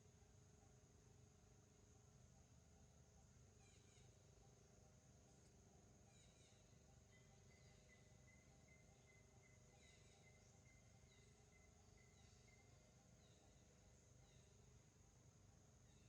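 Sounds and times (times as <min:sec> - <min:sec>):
high insect drone: 0:01.4 - 0:16.0
soft bird chirps: 0:05.3 - 0:14.7.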